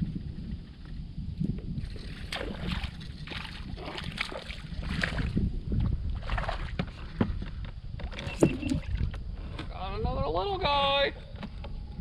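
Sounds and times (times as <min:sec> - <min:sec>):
wind rumble on microphone: 0:00.0 - 0:12.0
water splashing around a kayak: 0:01.8 - 0:09.2.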